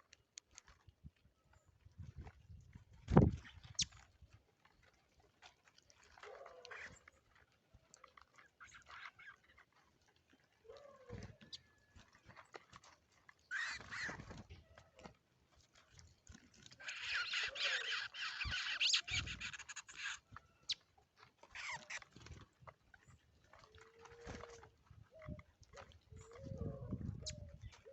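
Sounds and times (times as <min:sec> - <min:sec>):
scratchy bird calls: 0:03.4 - 0:04.0, 0:06.2 - 0:09.8, 0:10.6 - 0:15.0, 0:15.8 - 0:23.2.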